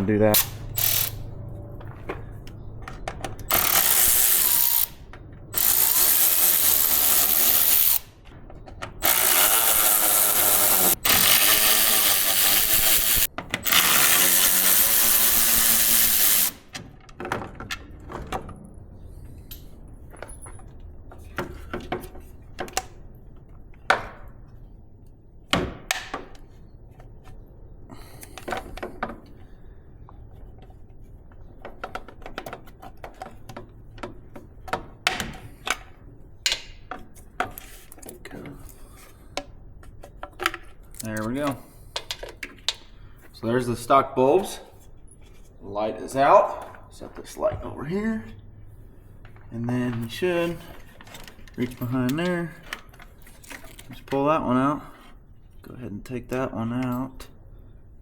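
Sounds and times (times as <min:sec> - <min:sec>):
cordless drill motor whine: 0:09.0 - 0:16.6
clicks and knocks of handling tools: 0:30.1 - 0:42.9, 0:49.2 - 0:54.3.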